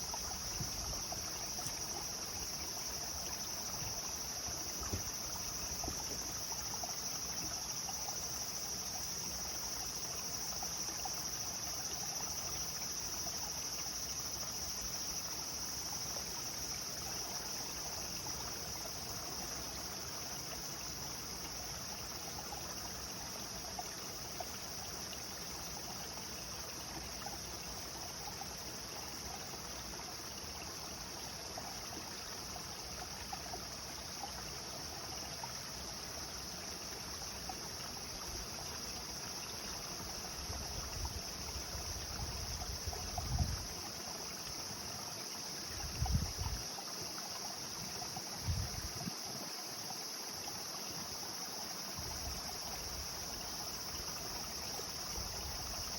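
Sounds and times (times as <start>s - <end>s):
insects droning: 0.0s - 55.9s
stream trickling: 0.0s - 55.9s.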